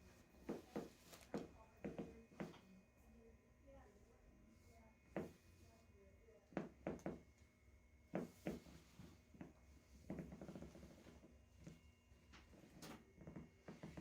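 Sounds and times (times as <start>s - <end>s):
soft rustling: 0.0s - 2.8s, 8.1s - 14.0s.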